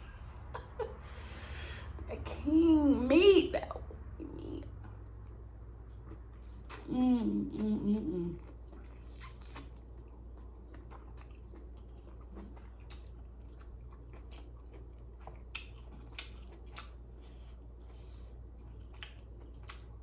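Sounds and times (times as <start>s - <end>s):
steady low hum: 0.0s - 20.0s
person chewing food: 4.2s - 6.9s, 7.5s - 20.0s.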